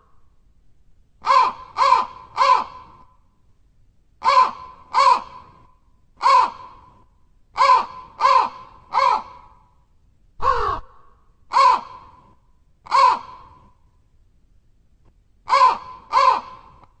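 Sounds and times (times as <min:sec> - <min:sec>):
crow cawing: 0:01.2 - 0:03.0, 0:04.2 - 0:05.6, 0:06.2 - 0:06.9, 0:07.6 - 0:09.6, 0:10.4 - 0:12.2, 0:12.9 - 0:13.6, 0:15.5 - 0:16.9.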